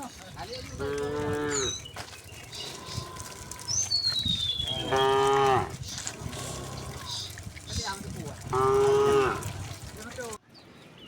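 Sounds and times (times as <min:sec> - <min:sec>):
cattle mooing: 0:00.7 - 0:01.8, 0:02.5 - 0:03.8, 0:04.6 - 0:07.4, 0:08.2 - 0:09.7.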